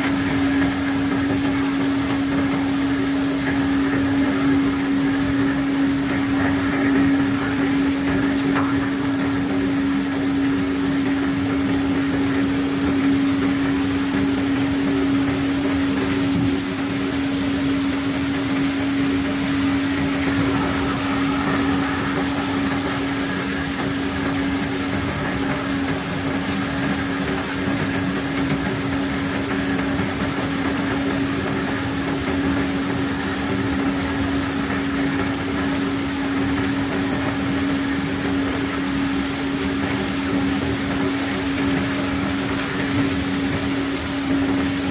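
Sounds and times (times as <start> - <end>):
machinery engine humming: 0.0 - 44.9.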